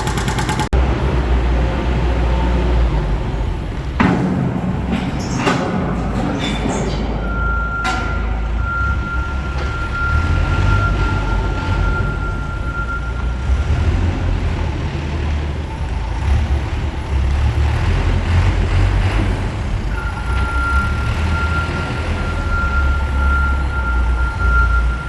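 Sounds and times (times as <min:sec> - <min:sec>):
backhoe diesel engine running: 0:00.0 - 0:25.0.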